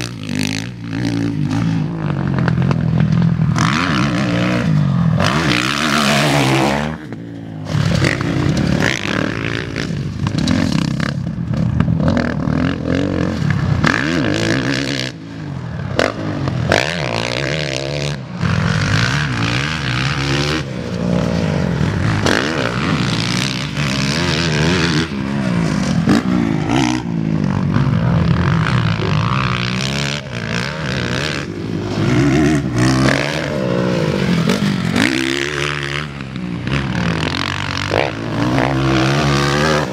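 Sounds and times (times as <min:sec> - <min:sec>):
motorbike engine revving: 0:00.0 - 0:39.9.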